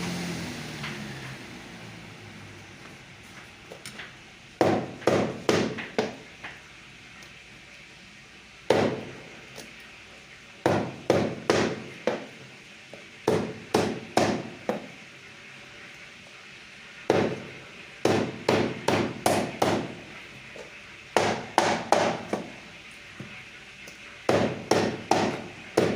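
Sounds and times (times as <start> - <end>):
cleaver chopping on block: 4.6 - 6.2, 8.7 - 9.1, 10.6 - 12.3, 13.3 - 14.9, 17.1 - 17.4, 18.0 - 19.9, 21.2 - 22.5, 24.3 - 25.9.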